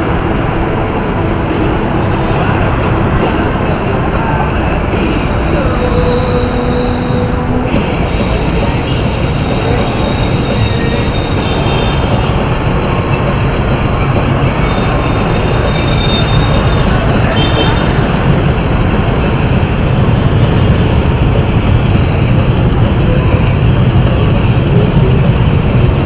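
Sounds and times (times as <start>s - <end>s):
wind and road noise: 0.0s - 26.0s
faint high squealing: 0.6s - 18.6s.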